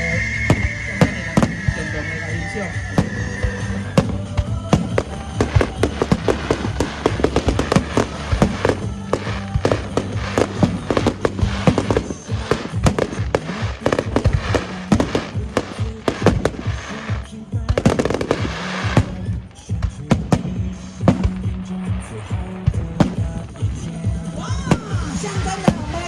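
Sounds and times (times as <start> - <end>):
fireworks exploding: 0.0 - 26.0
music playing: 0.0 - 26.0.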